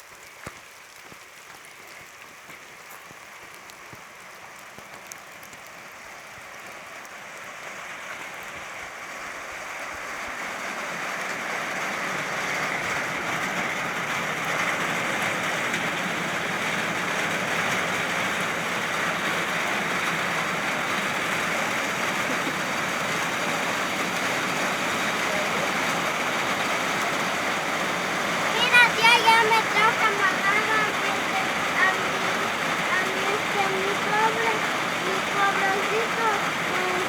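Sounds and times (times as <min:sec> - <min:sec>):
rain pouring: 0:00.0 - 0:37.0.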